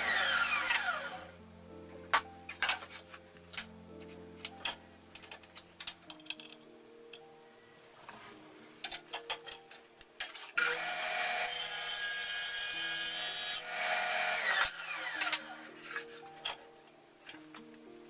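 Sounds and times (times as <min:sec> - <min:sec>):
power saw cutting plywood: 0:00.0 - 0:01.4, 0:10.6 - 0:16.1
saw blade winding down: 0:00.0 - 0:01.4, 0:10.6 - 0:16.0.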